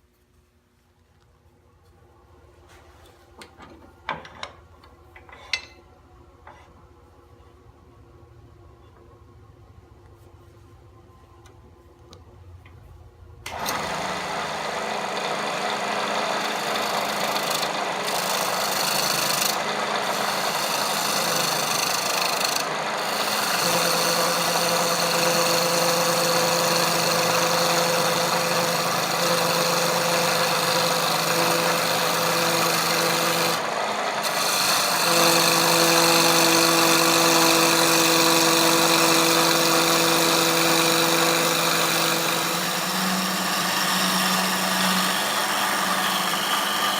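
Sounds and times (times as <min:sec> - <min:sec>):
wood lathe humming: 0:13.5 - 0:46.9.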